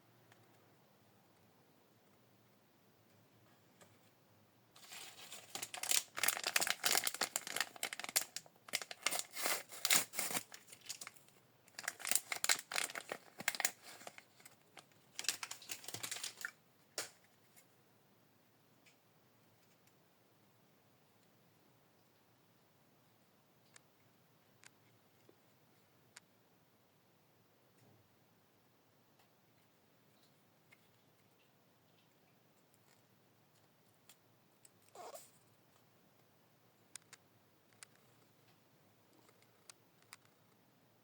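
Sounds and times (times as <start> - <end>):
plastic wrapping crinkling and tearing: 4.8 - 16.6.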